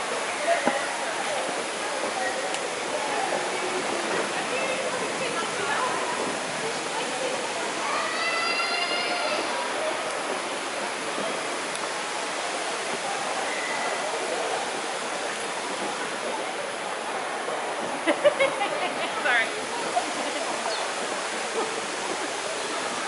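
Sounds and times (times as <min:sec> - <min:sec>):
faint voices: 0:00.0 - 0:23.0
waterfall rushing: 0:00.0 - 0:23.0.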